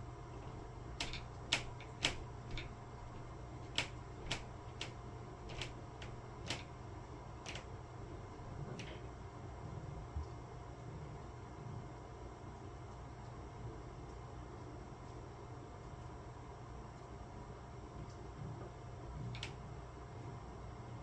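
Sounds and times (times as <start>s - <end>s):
steady low hum: 0.0s - 15.5s
sharp irregular clicks: 0.3s - 9.1s, 19.3s - 19.6s.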